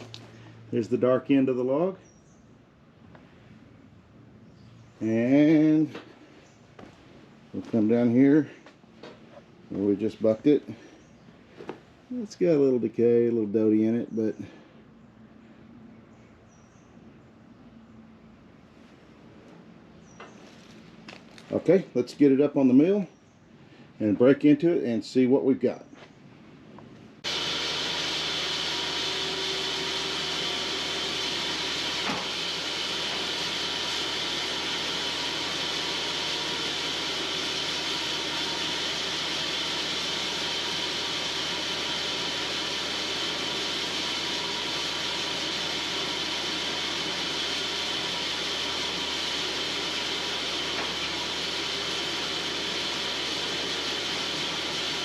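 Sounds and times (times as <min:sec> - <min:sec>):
band sawmill cutting log: 0:00.0 - 0:01.6, 0:05.1 - 0:06.1, 0:27.2 - 0:55.0.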